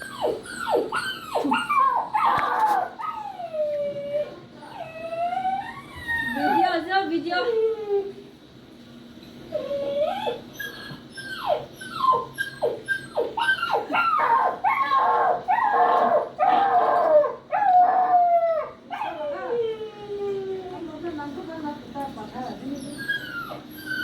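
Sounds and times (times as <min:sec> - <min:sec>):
puppy whimpering and yelping: 0:00.0 - 0:06.8, 0:09.5 - 0:20.4, 0:22.7 - 0:24.0.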